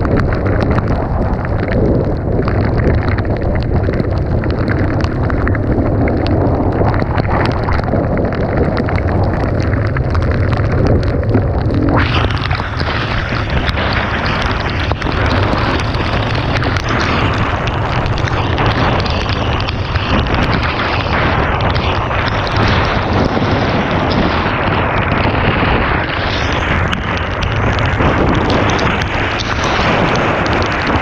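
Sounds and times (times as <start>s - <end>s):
wind buffeting microphone: 0.0s - 31.0s
hissing rush: 11.0s - 31.0s.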